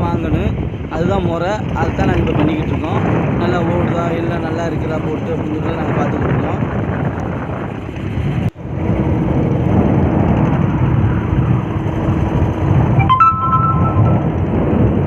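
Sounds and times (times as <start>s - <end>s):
boat engine running: 0.1s - 15.0s
two-pitched tone: 13.0s - 14.4s.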